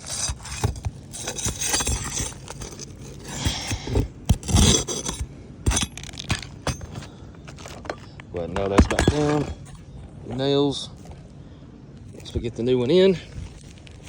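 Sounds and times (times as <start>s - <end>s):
hand tool scraping shingles: 0.0s - 9.8s.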